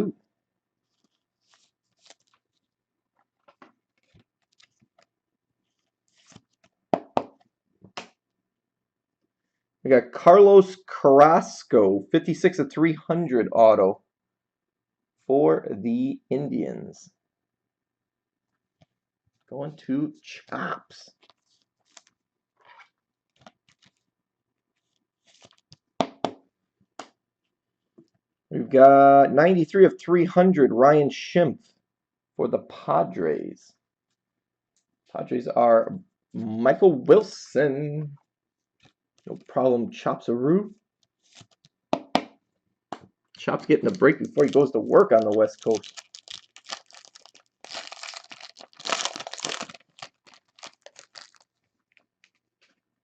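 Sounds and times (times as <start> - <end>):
cards rustling: 0.8 - 8.2, 20.4 - 24.1, 24.7 - 25.9, 41.0 - 41.8, 42.9 - 52.8
trading cards clicking and rustling: 23.3 - 24.0, 41.2 - 42.3, 42.9 - 52.4.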